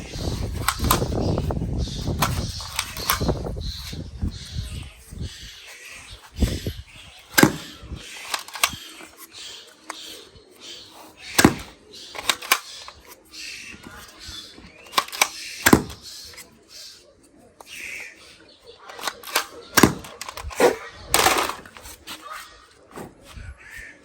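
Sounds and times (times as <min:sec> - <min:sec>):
sharp clicks and snaps: 0:00.6 - 0:01.2, 0:08.2 - 0:08.8, 0:11.4 - 0:13.2, 0:14.8 - 0:16.5, 0:18.9 - 0:22.0.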